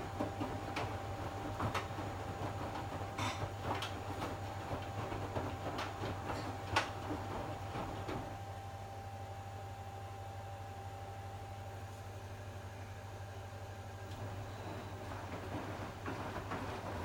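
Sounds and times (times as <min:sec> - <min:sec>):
washing machine humming: 0:00.0 - 0:17.0
faint machine whine: 0:08.3 - 0:16.9.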